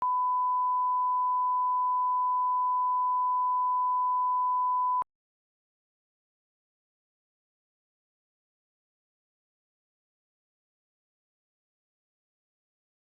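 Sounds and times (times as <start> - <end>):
sine test tone: 0.0 - 5.1.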